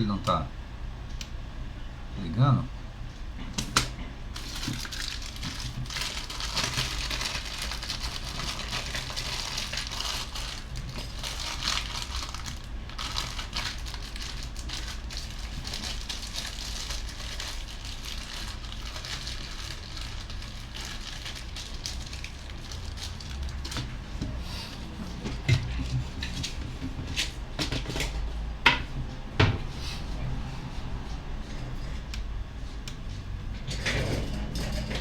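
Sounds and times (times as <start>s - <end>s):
crackling and rustling: 3.8s - 24.3s.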